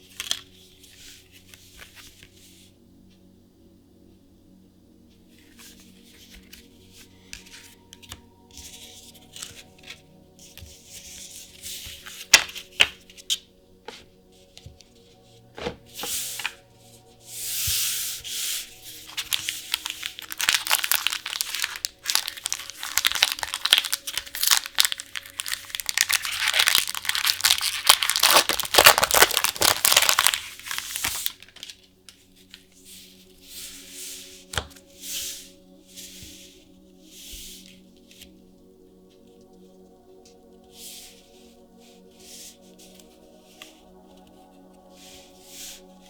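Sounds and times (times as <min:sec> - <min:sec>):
soft background music: 0:00.0 - 0:46.0
cardboard packaging rustling and tearing: 0:15.6 - 0:17.0, 0:17.6 - 0:31.9.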